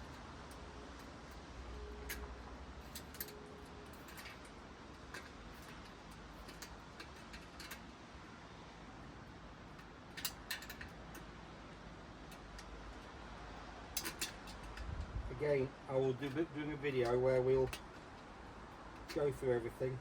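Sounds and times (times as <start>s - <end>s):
metal parts and tools clicking: 0.0s - 8.1s, 9.6s - 13.2s, 13.9s - 15.0s.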